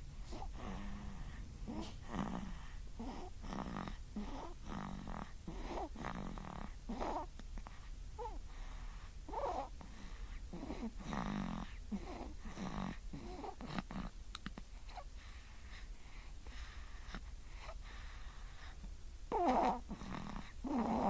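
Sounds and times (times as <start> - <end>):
baby snoring: 0.2 - 7.4, 8.2 - 8.4, 9.3 - 14.1, 18.6 - 21.0.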